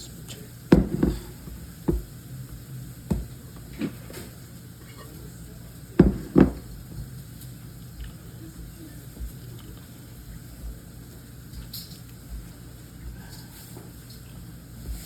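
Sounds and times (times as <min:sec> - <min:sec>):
dough knocking in a bowl: 0:00.7 - 0:02.2, 0:03.1 - 0:04.3, 0:06.0 - 0:07.1.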